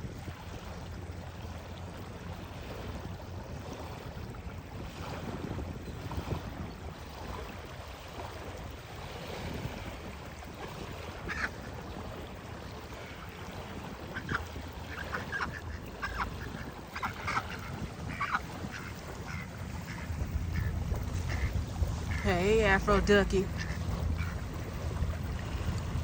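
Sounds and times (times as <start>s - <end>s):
wind rumble on microphone: 0.0s - 26.0s
ducks quacking: 11.1s - 11.8s, 14.0s - 24.6s.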